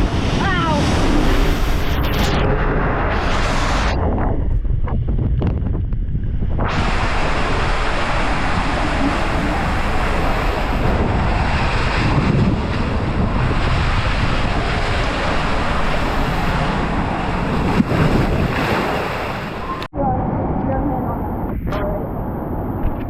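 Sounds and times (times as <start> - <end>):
loud rushing noise: 0.0 - 4.8, 6.4 - 20.6
wind buffeting microphone: 0.0 - 23.0.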